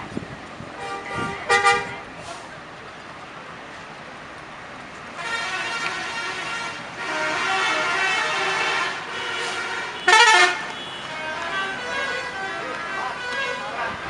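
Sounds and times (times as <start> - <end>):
multi-tone musical air horn: 0.8 - 2.0, 5.2 - 14.0.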